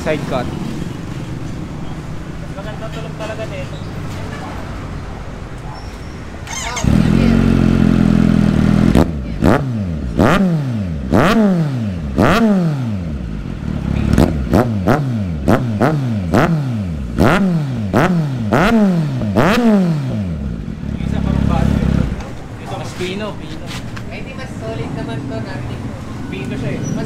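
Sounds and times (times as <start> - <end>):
motorcycle engine revving: 6.4 - 22.4.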